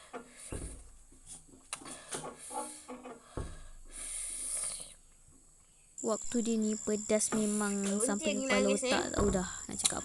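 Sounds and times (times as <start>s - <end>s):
person breathing hard: 1.8s - 5.0s
low thumps: 9.1s - 9.6s.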